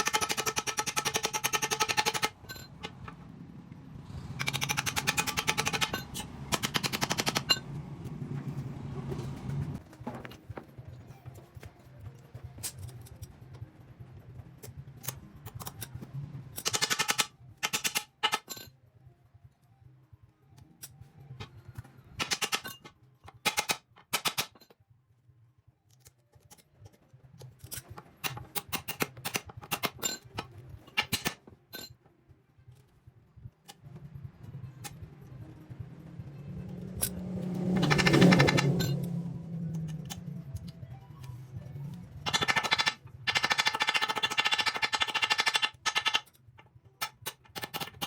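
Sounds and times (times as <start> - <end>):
rapid rattling hammering: 0.0 - 3.0, 4.4 - 7.6, 22.2 - 22.8, 37.8 - 39.0, 42.2 - 46.3.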